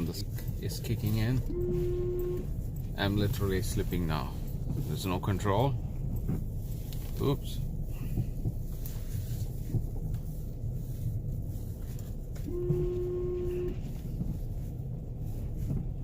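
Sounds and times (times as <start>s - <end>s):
low rumble inside car cabin: 0.0s - 16.0s
steady pitched tone: 1.4s - 2.7s.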